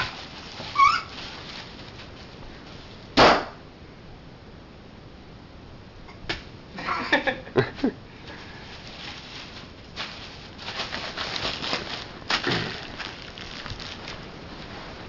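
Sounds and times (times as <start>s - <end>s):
bubble wrap snapping and crinkling: 0.0s - 3.0s, 8.7s - 15.0s.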